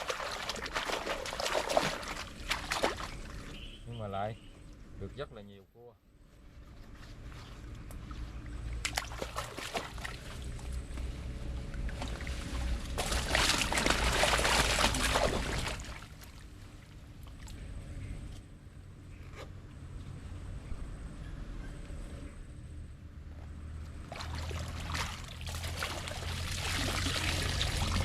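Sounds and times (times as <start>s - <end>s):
water sloshing and splashing: 0.0s - 3.8s, 7.1s - 17.8s, 23.9s - 28.0s.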